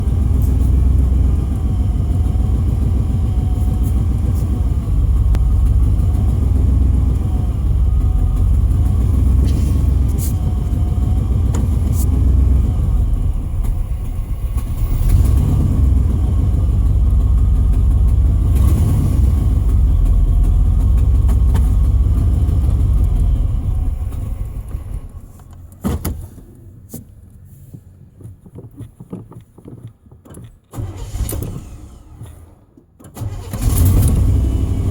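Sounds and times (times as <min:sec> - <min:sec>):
truck engine running roughly: 0:00.0 - 0:25.7, 0:33.2 - 0:34.9.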